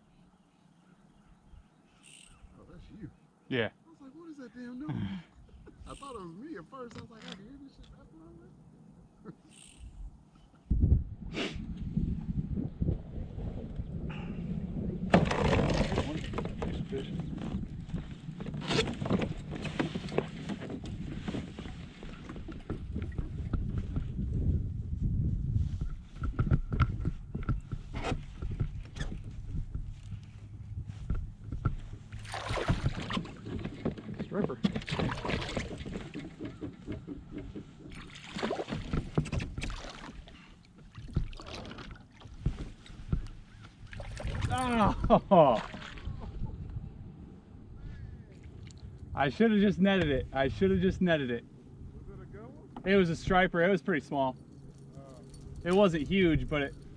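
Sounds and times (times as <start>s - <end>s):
wind rumbling on microphone: 9.8s - 53.5s
water sloshing against kayak hull: 15.0s - 24.2s, 31.0s - 46.8s
fishing gear clicking and rustling: 15.2s - 24.0s, 25.9s - 44.8s, 54.3s - 56.9s.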